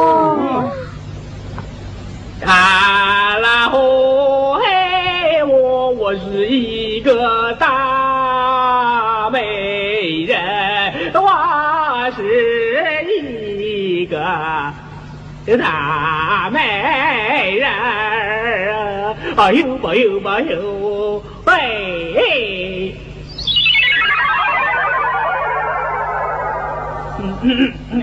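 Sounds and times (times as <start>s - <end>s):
steady low accompaniment: 23.2s - 28.0s.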